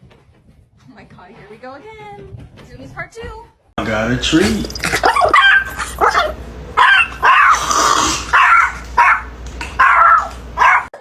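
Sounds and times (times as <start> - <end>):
dog barking: 5.0 - 11.0.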